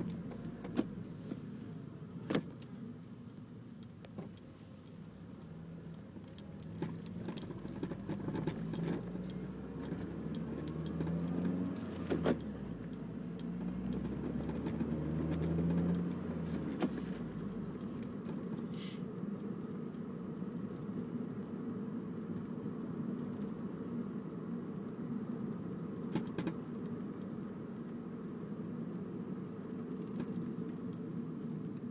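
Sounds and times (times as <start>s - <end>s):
car engine droning: 0.0s - 31.9s
sharp clicks and ticks: 5.4s - 18.7s.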